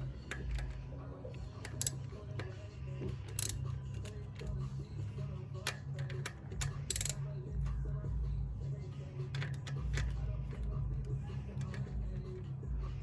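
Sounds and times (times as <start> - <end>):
steady low hum: 0.0 - 13.0
socket wrench metal clicks: 0.2 - 4.6, 5.6 - 7.8, 9.3 - 12.4.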